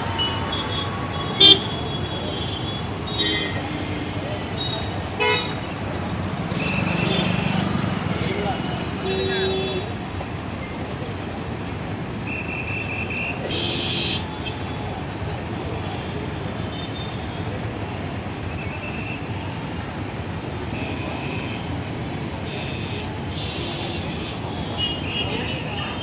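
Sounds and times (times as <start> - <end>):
road traffic noise: 0.0 - 26.0.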